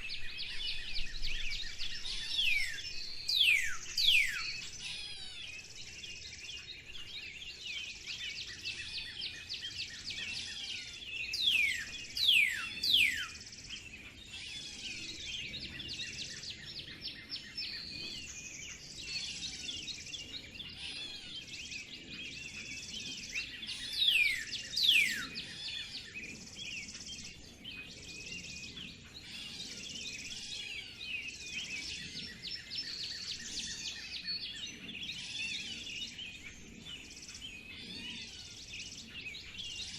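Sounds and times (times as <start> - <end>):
birds chirping and twittering: 0.0 - 39.9.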